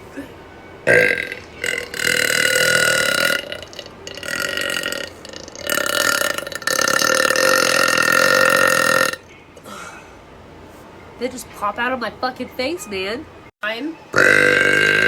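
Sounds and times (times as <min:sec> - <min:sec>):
woman belching loudly: 0:00.9 - 0:09.2, 0:14.2 - 0:15.0.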